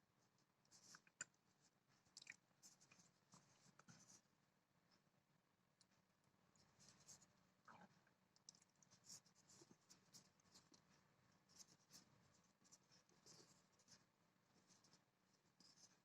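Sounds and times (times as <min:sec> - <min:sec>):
faint scratching and rustling: 0:00.0 - 0:05.0, 0:05.9 - 0:16.0.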